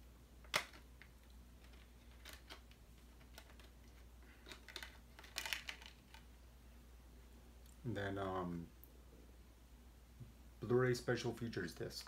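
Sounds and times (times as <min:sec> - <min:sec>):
disc cases being handled: 0:00.5 - 0:06.3.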